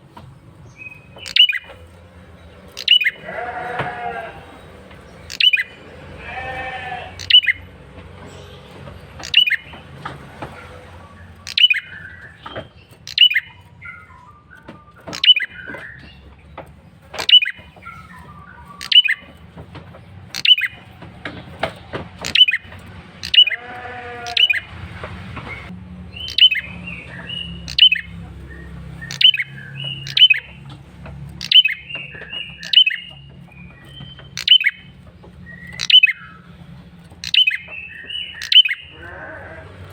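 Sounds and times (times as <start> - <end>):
bird twittering: 0.6 - 7.7, 9.1 - 9.9, 10.5 - 19.6, 20.2 - 20.9, 21.6 - 24.7, 25.5 - 30.7, 31.3 - 39.6
bird giving sharp descending calls: 6.3 - 7.6.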